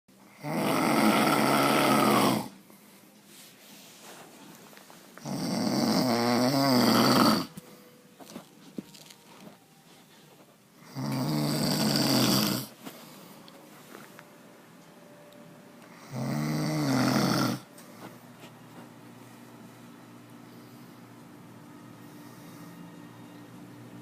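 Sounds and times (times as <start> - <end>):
man snoring: 0.3 - 2.6, 5.2 - 7.6, 10.8 - 12.8, 15.9 - 17.7
quiet breathing: 2.4 - 5.5, 6.6 - 14.2, 17.4 - 23.0.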